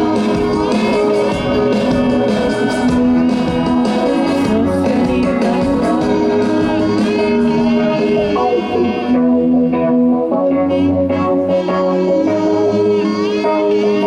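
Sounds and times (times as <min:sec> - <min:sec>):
live rock band playing: 0:00.0 - 0:14.0
strummed guitars: 0:00.0 - 0:14.0.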